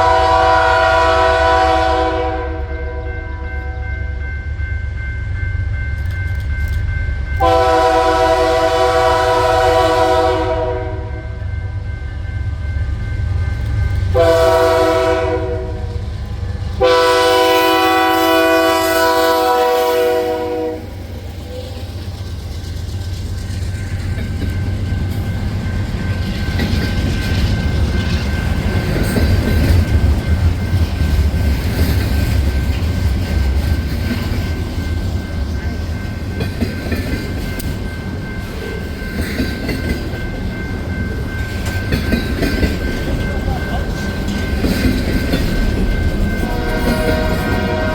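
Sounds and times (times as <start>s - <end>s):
locomotive air horn blasts: 0.0s - 3.1s, 7.4s - 11.3s, 14.2s - 16.0s, 16.8s - 21.0s, 46.4s - 47.9s
train rumbling and clattering: 0.0s - 47.9s.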